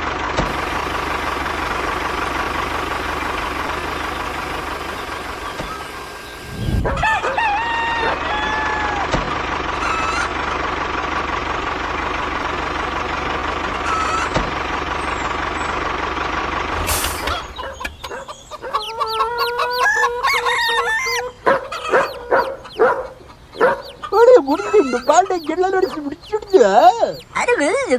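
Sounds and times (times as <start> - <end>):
motor hum: 0.0 - 27.9
chickens clucking: 0.4 - 27.9
chicks chirping: 3.2 - 9.2, 13.7 - 14.4, 17.3 - 27.9
rooster crowing: 6.4 - 9.2, 18.1 - 27.4.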